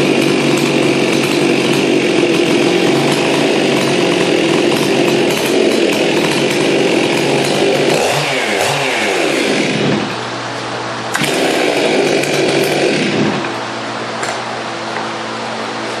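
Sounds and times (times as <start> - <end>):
chainsaw engine revving: 0.0 - 10.2, 11.1 - 13.6.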